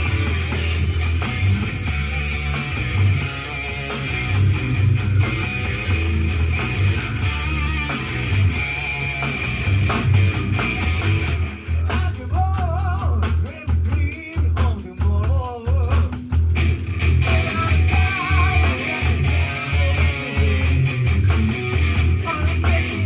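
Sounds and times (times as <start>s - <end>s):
drum kit playing: 0.0s - 23.0s
recorded rock song: 0.0s - 23.0s
person singing: 17.2s - 21.0s, 22.1s - 23.0s.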